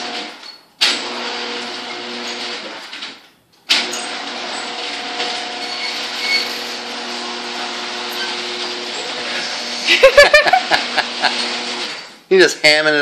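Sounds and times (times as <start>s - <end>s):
garage door opener humming: 0.0s - 12.2s.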